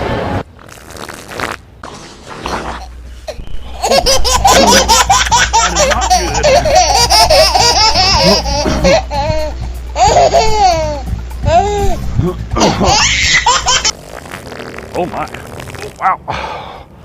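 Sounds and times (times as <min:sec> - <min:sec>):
high-pitched laughter: 0:03.7 - 0:11.8, 0:12.6 - 0:13.9.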